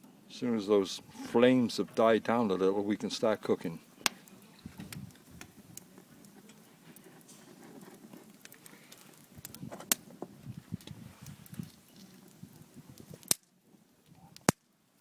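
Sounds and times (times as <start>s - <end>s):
wood fire crackling: 0.0s - 15.0s
sharp pops of fire: 4.0s - 13.6s, 14.4s - 15.0s.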